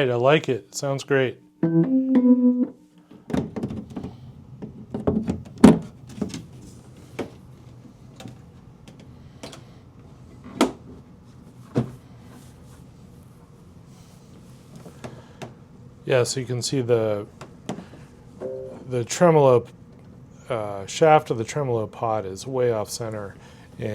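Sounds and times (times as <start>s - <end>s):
low steady hum: 0.0s - 23.9s
electric piano note: 1.6s - 2.8s, 18.4s - 19.0s.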